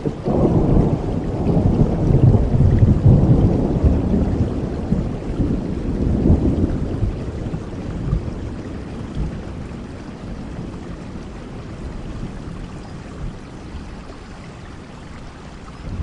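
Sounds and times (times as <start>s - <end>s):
thunder rolling: 0.0s - 10.9s, 15.8s - 16.0s
steady rain: 0.0s - 16.0s.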